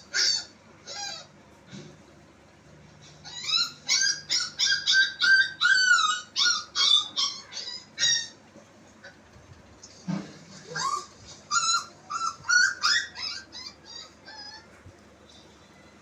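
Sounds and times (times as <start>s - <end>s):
dog yipping and whimpering: 0.0s - 1.4s, 3.0s - 9.2s, 10.6s - 15.0s.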